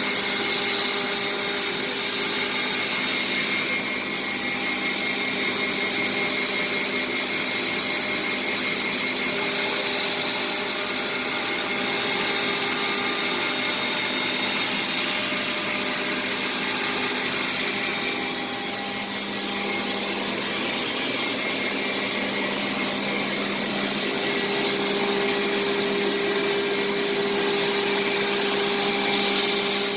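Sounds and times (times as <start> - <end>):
router spindle whining: 0.0 - 29.9.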